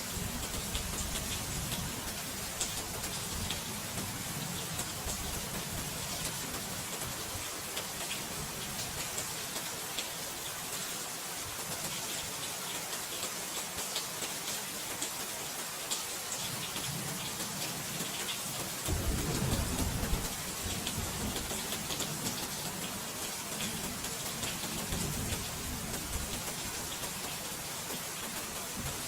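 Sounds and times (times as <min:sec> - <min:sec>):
steady rain falling: 0:00.0 - 0:29.0
low rumble of thunder: 0:18.9 - 0:21.8.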